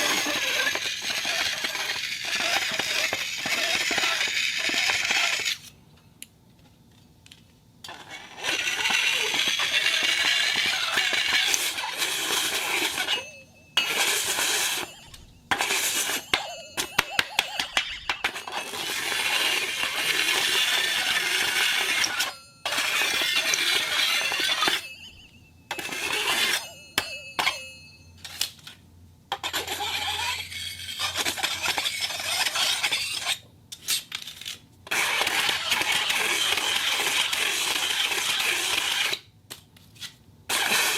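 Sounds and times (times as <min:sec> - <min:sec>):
metal scraping on iron plate: 0:00.0 - 0:05.6, 0:07.9 - 0:25.1, 0:25.7 - 0:27.8, 0:29.3 - 0:33.4, 0:40.5 - 0:40.9
ringing metallic tones: 0:08.9 - 0:28.4.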